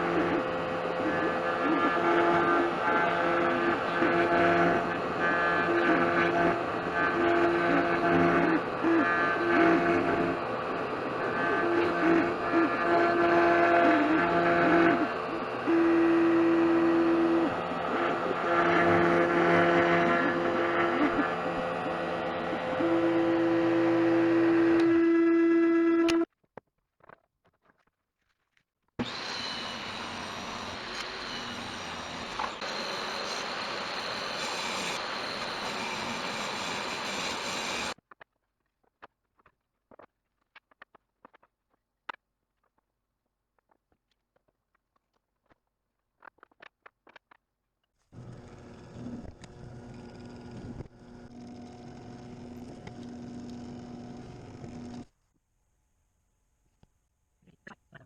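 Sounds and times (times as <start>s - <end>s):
spindle motor high whine: 0.0s - 26.3s, 29.0s - 38.0s, 48.2s - 55.1s.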